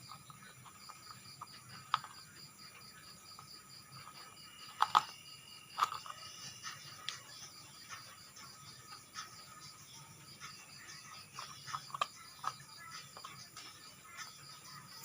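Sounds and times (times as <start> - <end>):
plastic toy parts clicking: 0.0 - 7.4, 10.8 - 14.3
high insect chirping: 0.0 - 15.0.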